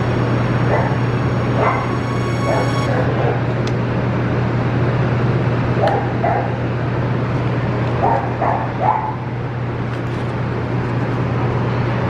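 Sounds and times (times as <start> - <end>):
steady low hum: 0.0 - 5.7.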